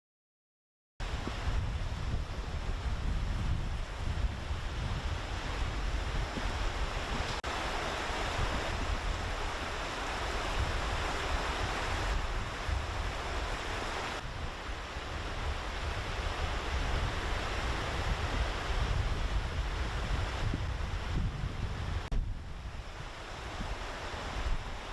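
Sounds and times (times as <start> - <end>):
wind buffeting microphone: 1.0 - 24.9
river water rushing: 3.8 - 21.2, 22.6 - 24.9.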